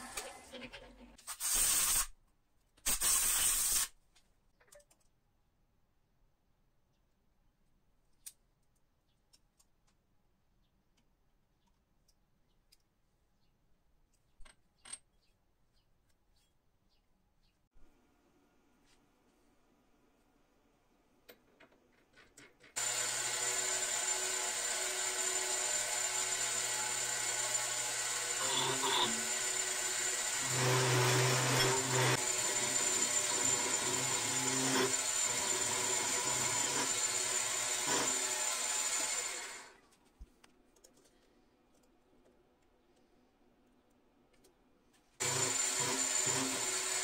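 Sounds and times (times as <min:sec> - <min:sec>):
electric power tool running: 0:22.8 - 0:39.8, 0:45.2 - 0:47.0.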